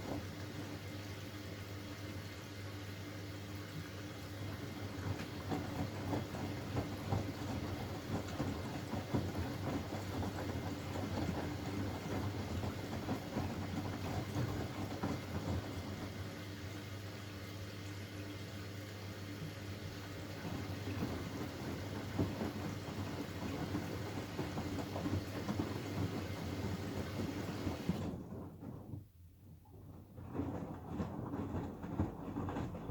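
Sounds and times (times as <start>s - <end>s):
washing machine motor hum: 0.0s - 32.9s
water sloshing in washing machine: 0.0s - 32.9s.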